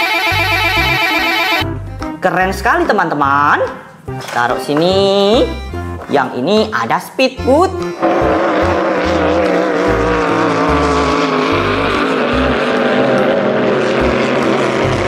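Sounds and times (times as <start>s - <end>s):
toy motorboat engine sound effect: 8.0s - 15.0s.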